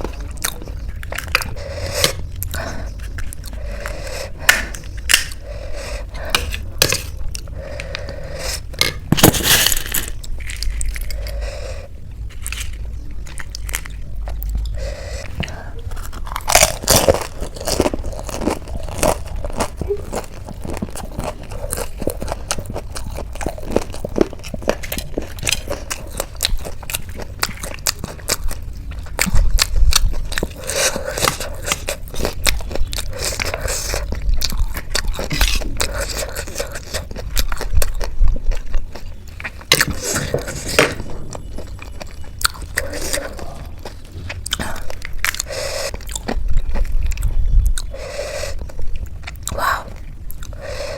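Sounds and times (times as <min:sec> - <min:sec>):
crunching and chewing crisp snacks: 0:00.0 - 0:50.9.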